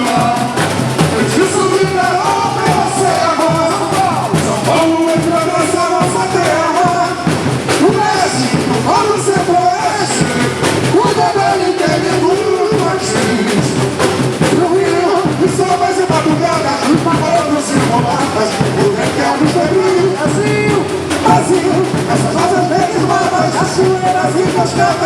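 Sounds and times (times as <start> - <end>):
chorus singing samba: 0.0 - 25.0
samba drum percussion: 0.0 - 25.0.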